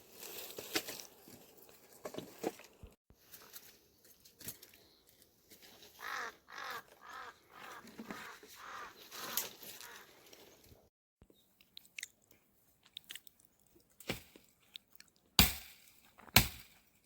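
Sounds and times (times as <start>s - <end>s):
bird harsh calls: 6.0s - 10.2s.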